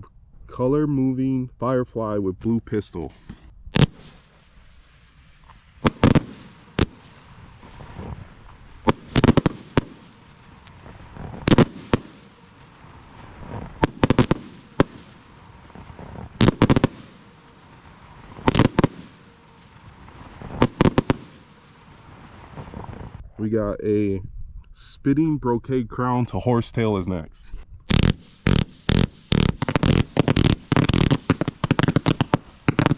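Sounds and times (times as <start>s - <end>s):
faint firework hiss: 3.0s - 23.2s, 27.8s - 32.9s
firework cake bangs: 3.7s - 4.4s, 5.8s - 19.8s, 20.4s - 21.7s, 27.9s - 32.9s.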